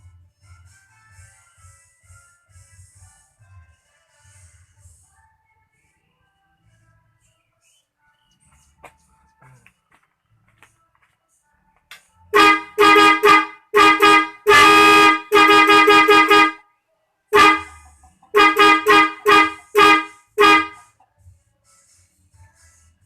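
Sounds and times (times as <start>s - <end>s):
multi-tone horn blasts: 12.3s - 16.7s, 17.3s - 20.9s.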